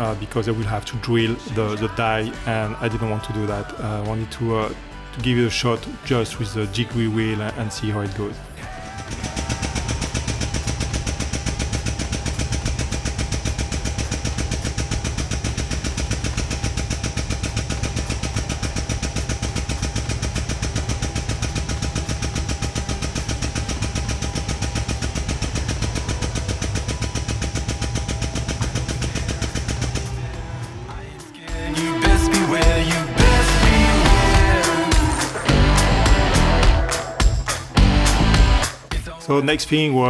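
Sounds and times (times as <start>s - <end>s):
hydraulic pump chattering: 0.0s - 30.6s.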